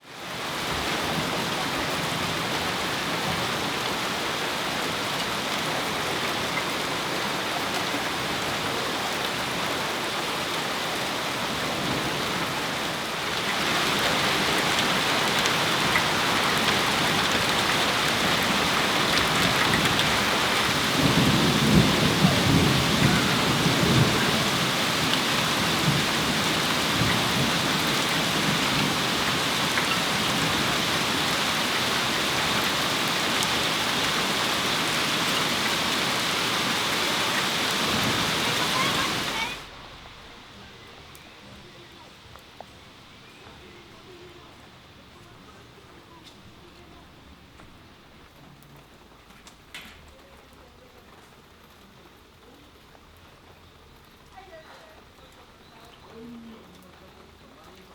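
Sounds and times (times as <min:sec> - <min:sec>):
heavy rain pouring: 0:00.0 - 0:57.9
thunder rumble: 0:11.5 - 0:48.1.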